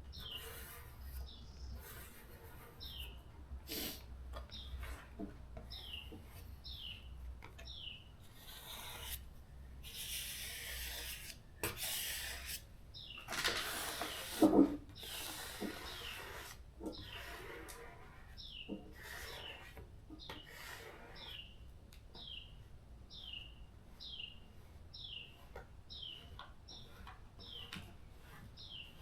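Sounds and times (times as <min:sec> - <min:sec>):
scratchy rubbing strokes: 0:00.1 - 0:04.0, 0:08.2 - 0:09.2, 0:09.8 - 0:12.7, 0:13.6 - 0:21.6, 0:23.3 - 0:29.0
bird chirping: 0:01.2 - 0:01.9, 0:02.8 - 0:03.2, 0:05.7 - 0:08.1, 0:13.0 - 0:13.3, 0:18.4 - 0:18.8, 0:22.2 - 0:27.8, 0:28.6 - 0:29.0.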